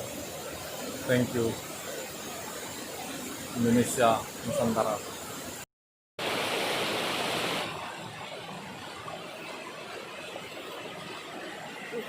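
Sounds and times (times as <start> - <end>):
waterfall rushing hiss: 0.0 - 5.6, 6.2 - 8.6.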